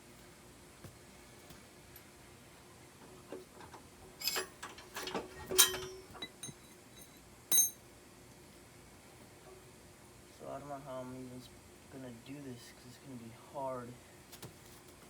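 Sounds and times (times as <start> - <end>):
metal parts clinking and knocking: 3.6 - 7.8.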